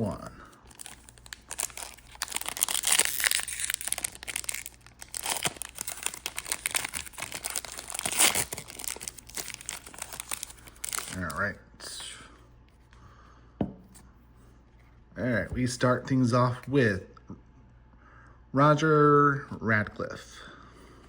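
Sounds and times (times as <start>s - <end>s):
plastic foil pack crinkling: 0.6s - 11.4s.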